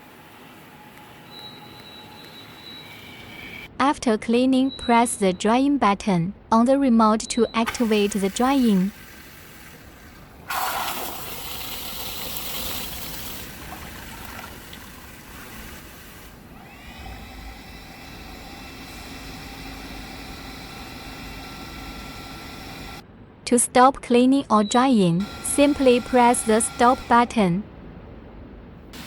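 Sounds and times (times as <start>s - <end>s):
dryer fan motor whine: 7.4s - 23.0s, 25.2s - 29.0s
bidet water spray hissing: 7.7s - 16.5s.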